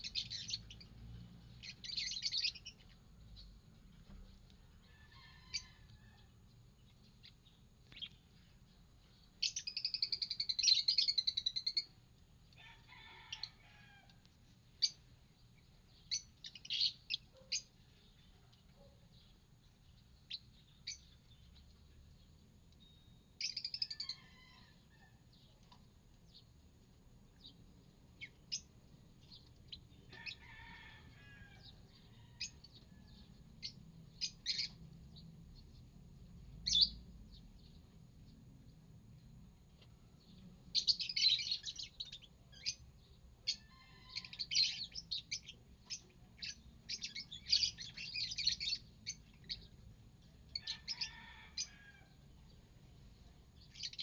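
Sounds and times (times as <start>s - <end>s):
lovebirds chirping: 0.0s - 6.1s, 6.8s - 12.0s, 14.7s - 24.6s, 31.6s - 35.9s, 36.6s - 38.4s, 39.2s - 49.8s, 50.4s - 51.7s, 53.5s - 54.0s.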